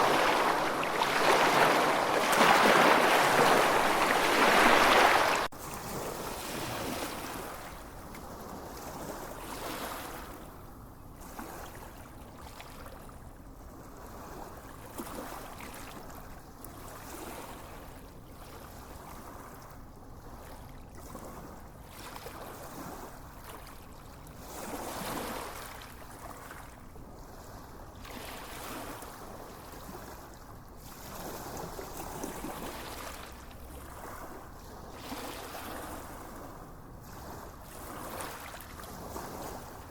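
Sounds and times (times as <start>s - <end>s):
waves washing onto beach: 0.0s - 7.6s.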